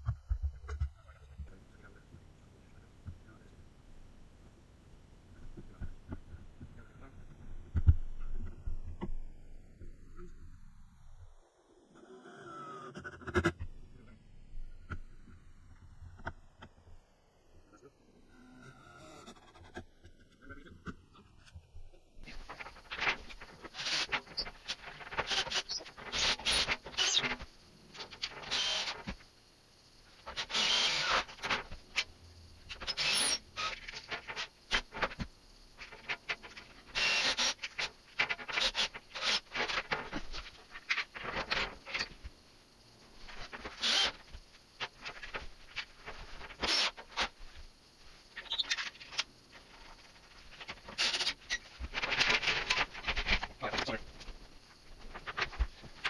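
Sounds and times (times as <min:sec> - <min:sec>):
scratchy rustling and scraping: 0:22.2 - 0:29.2, 0:30.2 - 0:32.1, 0:32.7 - 0:42.3, 0:43.0 - 0:56.0.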